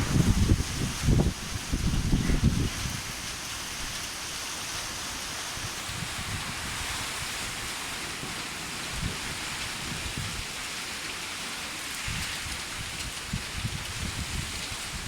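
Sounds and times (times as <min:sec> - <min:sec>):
low thunder rumbles: 0:00.0 - 0:03.2
heavy rain falling: 0:00.0 - 0:15.0.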